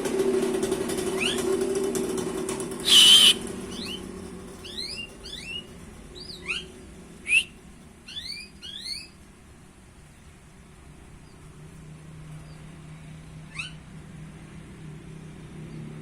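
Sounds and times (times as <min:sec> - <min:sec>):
songbird chirping: 0:02.8 - 0:10.4, 0:11.0 - 0:14.0.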